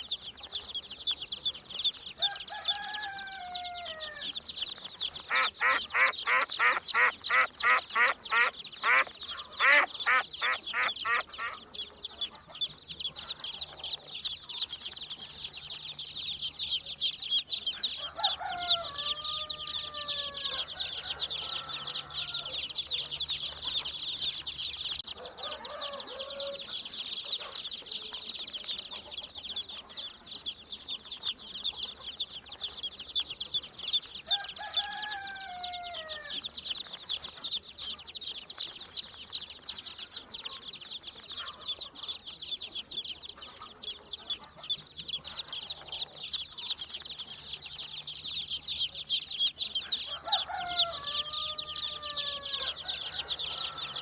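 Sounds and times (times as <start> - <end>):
chicks peeping: 0.0 - 54.0
hen calling: 5.3 - 11.6.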